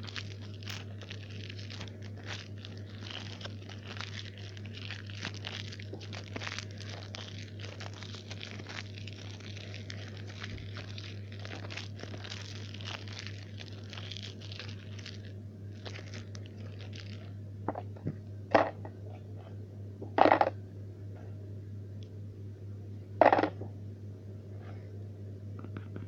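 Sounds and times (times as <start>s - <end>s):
crinkling and rustling: 0.0s - 20.5s
low hum: 0.0s - 26.0s.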